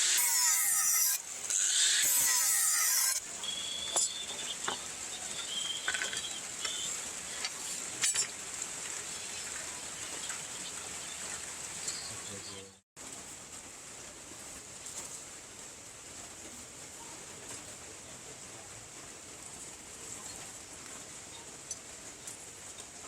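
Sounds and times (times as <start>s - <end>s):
steel scraping: 0.0s - 4.3s.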